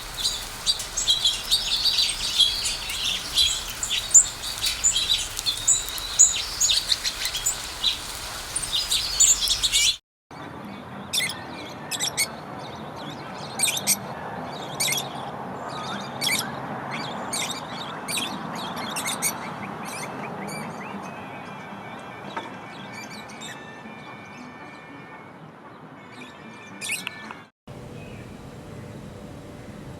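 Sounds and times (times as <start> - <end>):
background hiss: 0.0 - 10.0
songbirds chirping: 0.0 - 10.0.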